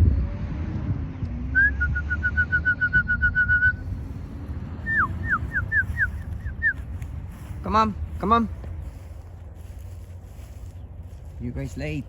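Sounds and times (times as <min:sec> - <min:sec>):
person whistling: 0:01.6 - 0:03.8, 0:04.9 - 0:06.8.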